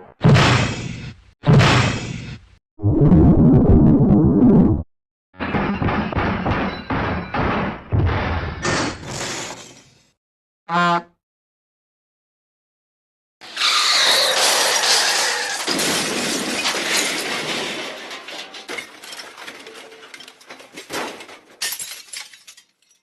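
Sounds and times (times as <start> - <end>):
crash of shattering glass: 8.5 - 10.0, 13.8 - 23.0
clinks of falling pieces: 14.7 - 23.0.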